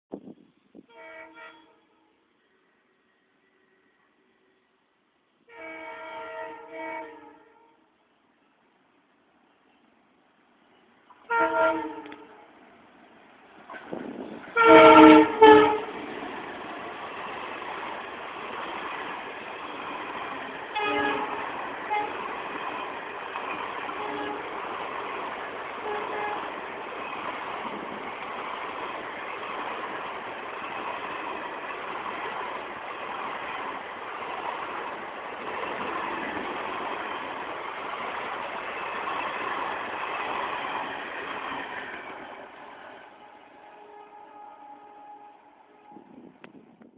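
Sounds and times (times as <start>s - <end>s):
locomotive horn: 0.8s - 4.6s, 5.5s - 7.9s, 11.2s - 12.6s, 14.5s - 16.0s, 20.7s - 22.3s, 23.8s - 24.6s, 25.8s - 26.6s, 43.2s - 46.4s
train rushing past: 11.1s - 46.9s.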